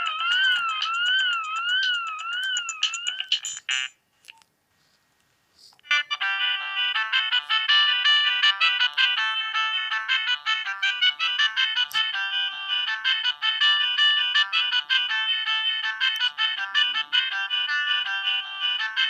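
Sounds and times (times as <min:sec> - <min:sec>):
warbling siren-like ringtone: 0:00.0 - 0:03.4
fast bright ringtone melody: 0:00.0 - 0:04.0, 0:05.9 - 0:19.0.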